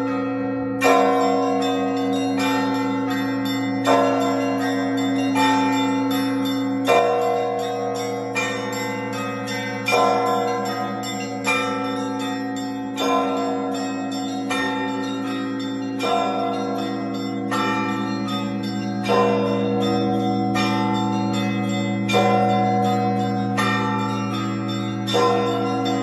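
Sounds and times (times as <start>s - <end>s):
church bells ringing: 0.0s - 26.0s.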